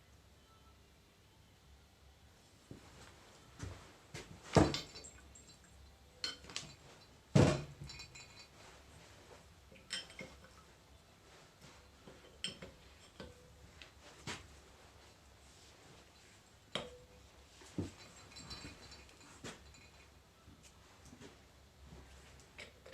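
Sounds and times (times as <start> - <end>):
metal tools clinking: 4.5 - 8.7, 9.8 - 10.6, 17.9 - 20.2.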